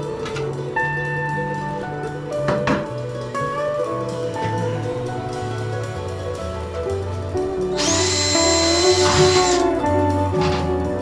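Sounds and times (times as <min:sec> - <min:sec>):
background music: 0:00.0 - 0:11.0
drill whining: 0:07.7 - 0:09.8.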